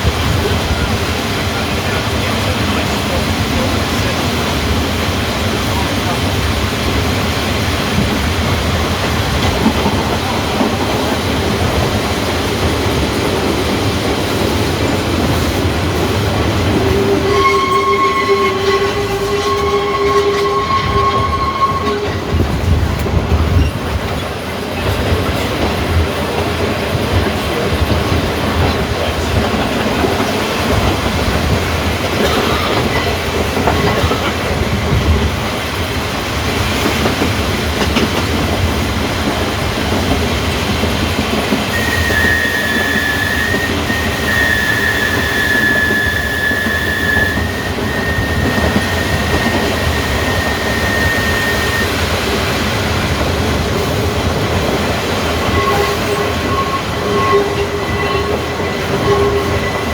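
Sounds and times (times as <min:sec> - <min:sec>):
tram wheels rumbling on rails: 0:00.0 - 0:59.9
high-pitched wheel squeal: 0:16.8 - 0:22.2, 0:41.7 - 0:52.0, 0:55.5 - 0:59.9.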